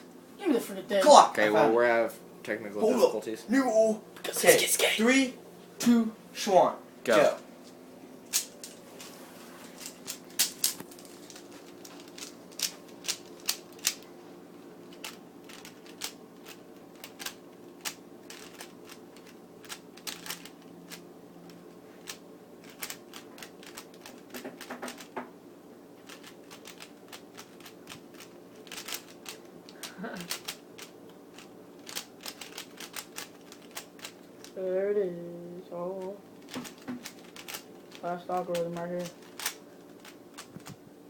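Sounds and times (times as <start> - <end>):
puzzle cube clicking: 10.1 - 14.0, 14.9 - 21.0, 22.0 - 25.2, 26.0 - 34.6, 36.4 - 40.7.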